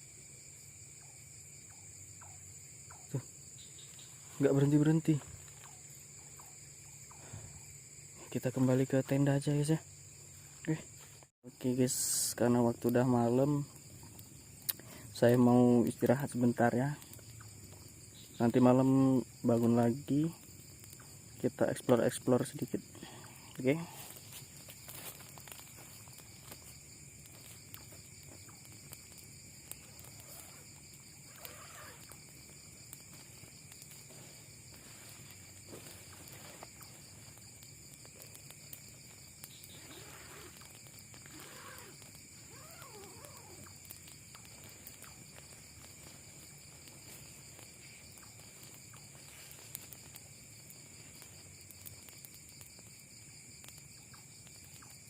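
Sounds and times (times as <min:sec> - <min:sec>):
insects trilling: 0:00.0 - 0:55.0
faint wavering animal calls: 0:39.6 - 0:46.2.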